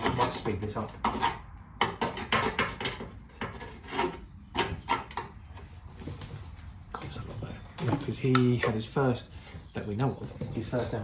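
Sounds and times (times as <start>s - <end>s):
screwdriver scraping dried mud: 0.0s - 5.6s.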